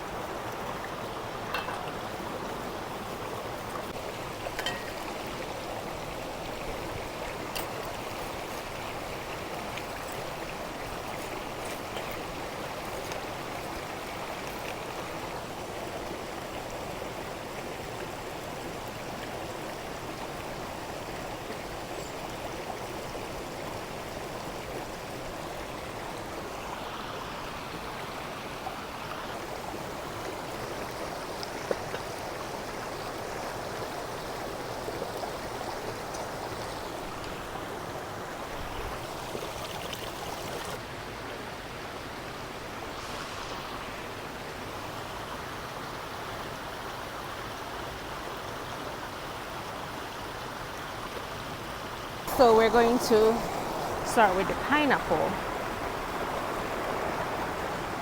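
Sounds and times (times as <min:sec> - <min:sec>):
river rushing: 0:42.6 - 0:46.2, 0:52.2 - 0:58.0.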